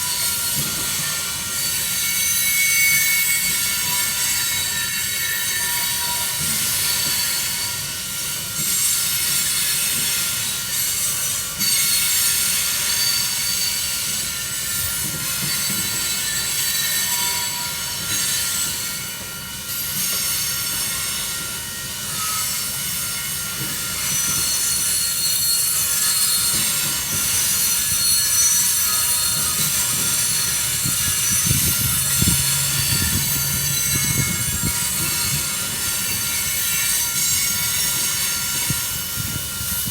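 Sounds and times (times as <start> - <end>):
steel wheels squealing on rails: 0.0 - 39.9
train rumble: 23.6 - 39.9.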